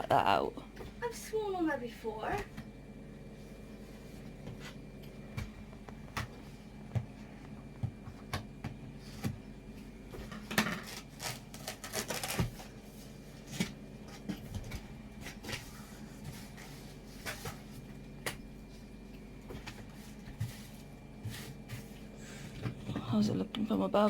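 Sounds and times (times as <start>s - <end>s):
packaging rustling and scraping: 10.2s - 14.7s.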